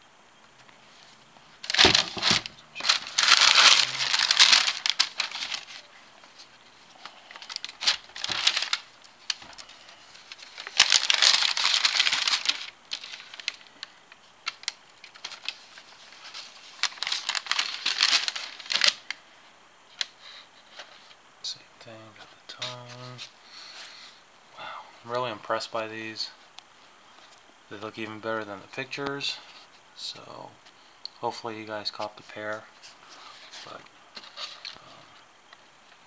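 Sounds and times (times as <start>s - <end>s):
paper crinkling and rustling: 0.6s - 19.1s, 31.9s - 35.2s.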